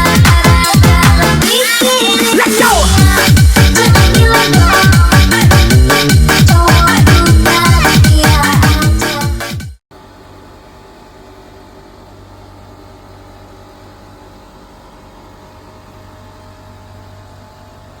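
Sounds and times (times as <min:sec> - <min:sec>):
background music: 0:00.0 - 0:09.7.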